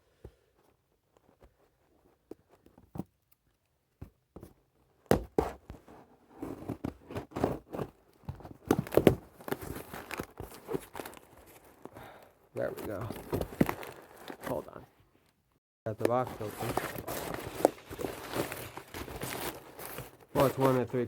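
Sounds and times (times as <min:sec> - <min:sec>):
cardboard tearing and crinkling: 0:08.6 - 0:11.8, 0:12.6 - 0:14.6, 0:16.0 - 0:21.0.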